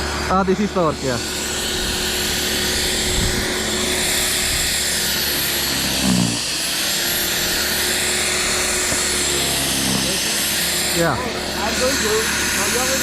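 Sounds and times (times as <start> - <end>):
electric snow thrower motor whine: 0.0 - 13.0.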